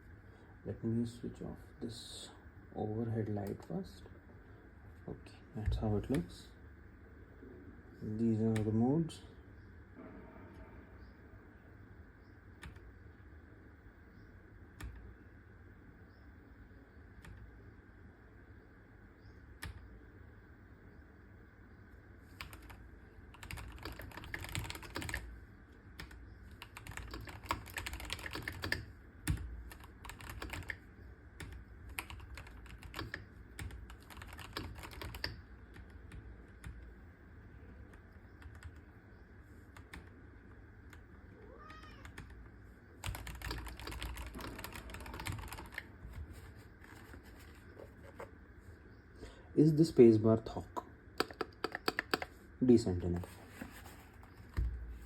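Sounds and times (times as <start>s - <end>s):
mechanical keyboard typing: 22.4s - 25.3s, 26.0s - 36.9s, 38.4s - 38.8s, 43.0s - 46.2s, 51.2s - 52.4s.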